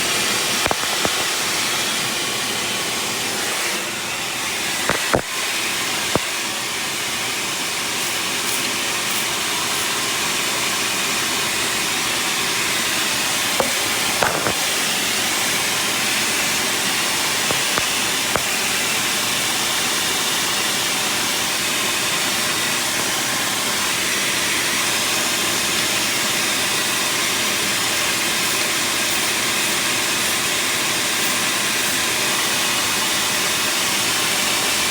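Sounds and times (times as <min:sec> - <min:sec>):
exhaust leak hissing: 0:00.0 - 0:26.3
sharp clicks: 0:04.9 - 0:05.4.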